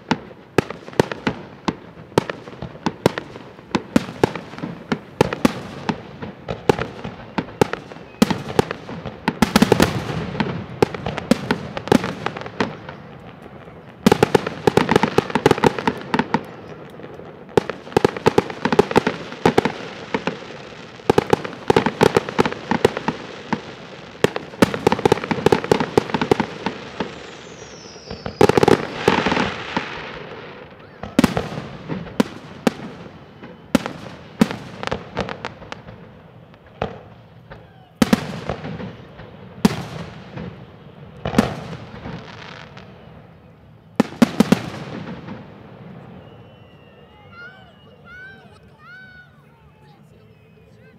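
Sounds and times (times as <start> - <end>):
fireworks bursting and crackling: 0.0 - 50.9.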